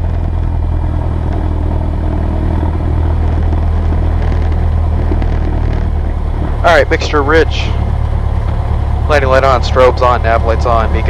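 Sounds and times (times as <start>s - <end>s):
propeller aircraft engine drone: 0.0s - 11.0s.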